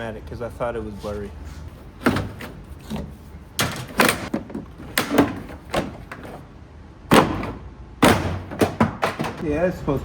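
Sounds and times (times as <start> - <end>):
plastic trim knocks and clunks: 3.6 - 6.4, 7.1 - 9.4.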